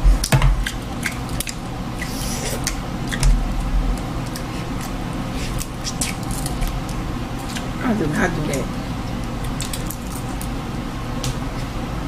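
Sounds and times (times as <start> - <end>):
wet eating sounds: 0.1 - 7.8.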